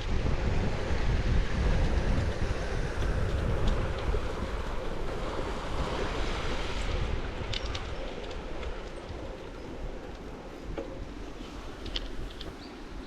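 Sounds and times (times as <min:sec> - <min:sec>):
wind buffeting microphone: 0:00.0 - 0:13.0
faint ticks: 0:07.5 - 0:12.7.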